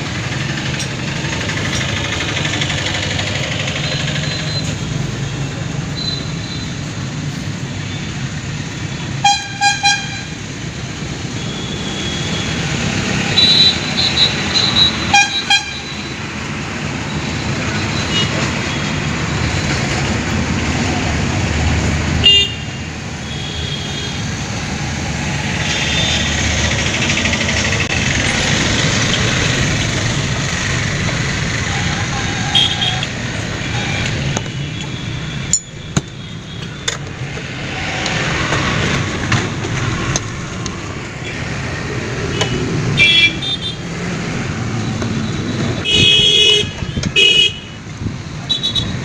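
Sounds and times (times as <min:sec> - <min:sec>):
road traffic: 0:00.0 - 0:49.0
vehicle horns honking: 0:09.2 - 0:10.4, 0:13.2 - 0:16.0, 0:22.2 - 0:24.3, 0:31.6 - 0:36.9, 0:42.3 - 0:43.8, 0:45.1 - 0:47.8, 0:48.5 - 0:49.0.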